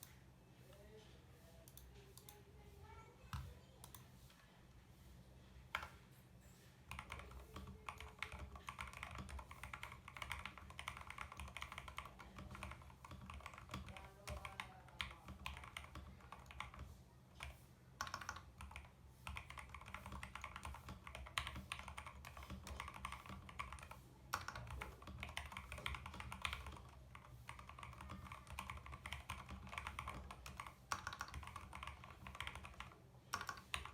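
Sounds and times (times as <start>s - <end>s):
mechanical keyboard typing: 6.9s - 33.9s.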